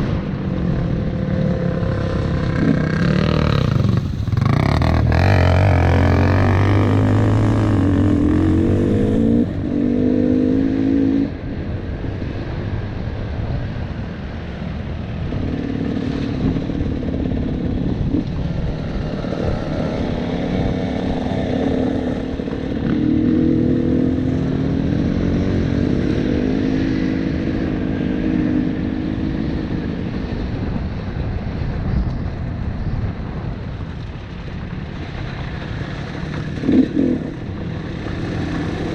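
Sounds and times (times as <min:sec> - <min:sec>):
dirt bike engine revving: 0:02.4 - 0:11.0.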